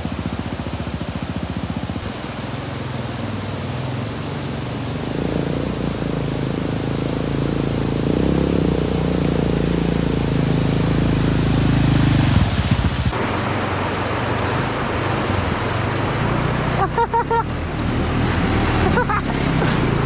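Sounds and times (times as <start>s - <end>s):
quad engine running: 0.0s - 13.2s, 14.9s - 20.0s
rough low engine rumble: 0.0s - 20.0s
wind hiss on microphone: 9.8s - 13.2s.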